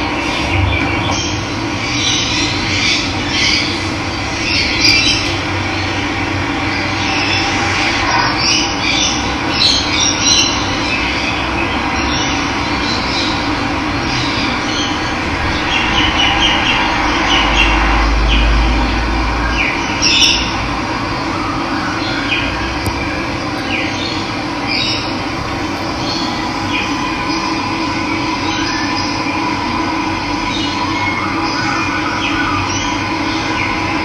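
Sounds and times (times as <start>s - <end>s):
low rumble: 0.0s - 3.2s, 23.4s - 30.1s
birds chirping: 21.2s - 29.4s.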